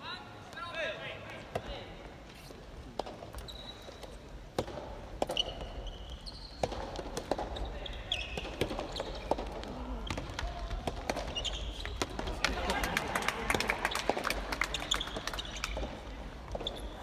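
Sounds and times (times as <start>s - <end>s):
shoe squeaks: 3.3s - 4.2s, 5.2s - 9.4s, 11.3s - 12.0s, 16.5s - 17.0s
ball bouncing on floor: 4.6s - 5.7s, 6.6s - 7.6s.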